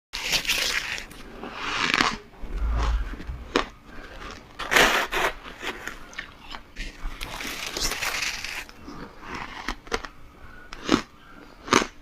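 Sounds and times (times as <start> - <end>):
low thump: 2.4 - 3.7.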